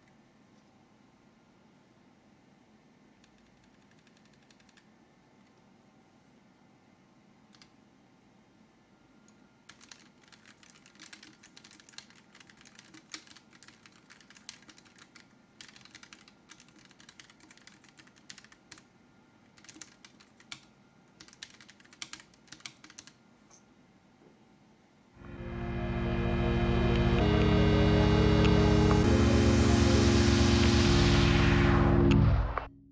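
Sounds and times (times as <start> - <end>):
mechanical keyboard typing: 3.2 - 5.6, 7.5 - 7.8, 9.7 - 18.9, 19.5 - 23.2.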